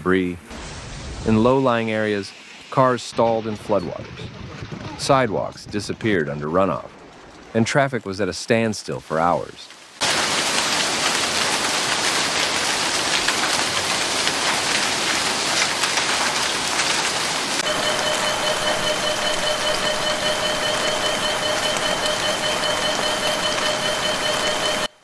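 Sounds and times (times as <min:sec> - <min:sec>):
hail pelting hard surfaces: 0:09.7 - 0:24.9
steady high tone: 0:17.6 - 0:25.0.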